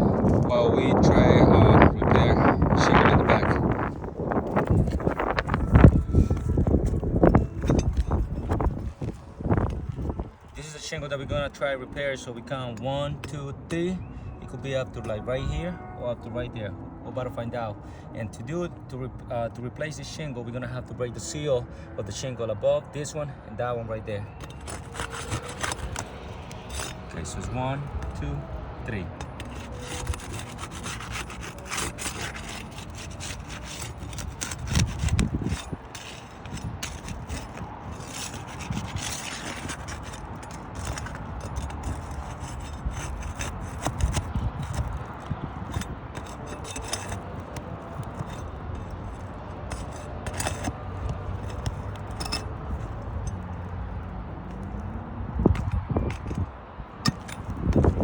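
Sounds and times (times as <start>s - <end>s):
tool scraping under roof shingles: 24.3s - 54.8s.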